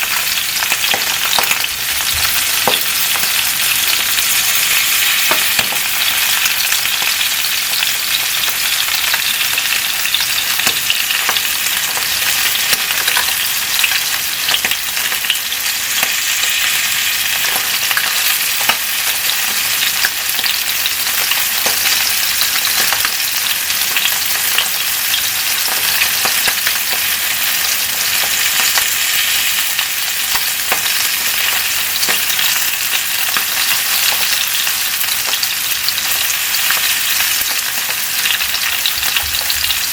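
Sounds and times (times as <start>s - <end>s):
fish sizzling and crackling: 0.0s - 39.9s.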